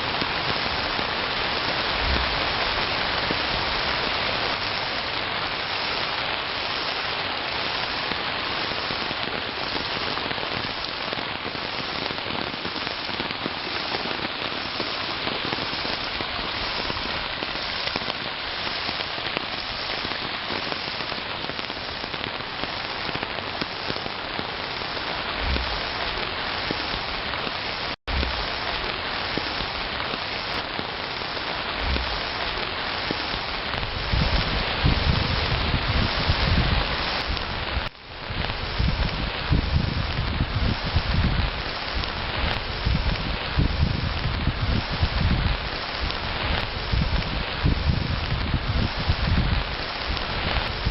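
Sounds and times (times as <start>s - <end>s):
heavy rain falling: 0.0s - 50.9s
low rumbles: 28.1s - 30.1s.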